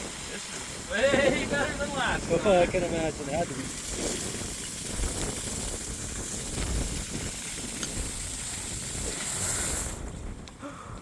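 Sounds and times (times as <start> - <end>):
pressurised water hissing: 0.0 - 10.2.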